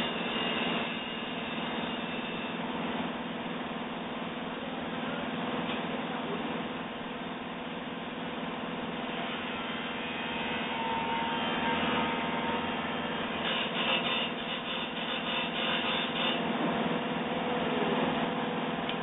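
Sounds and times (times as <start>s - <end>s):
drill bit grinding: 0.0s - 2.8s, 9.0s - 16.5s
drilling machine humming: 0.0s - 5.5s, 6.2s - 19.0s.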